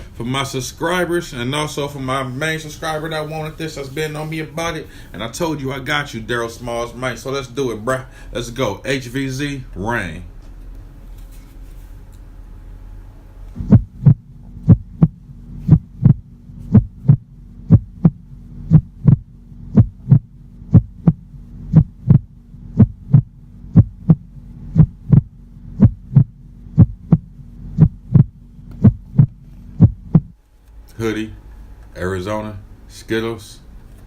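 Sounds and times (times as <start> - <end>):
heartbeat thumps: 13.6 - 30.4.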